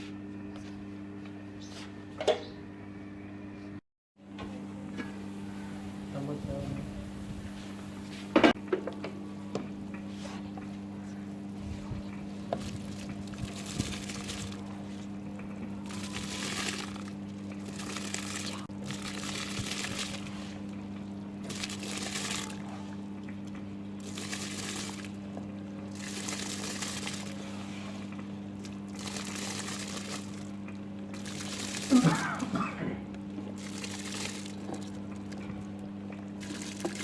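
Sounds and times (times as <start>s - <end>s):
steady low hum: 0.0s - 37.0s
water sloshing in a pot: 11.7s - 37.0s.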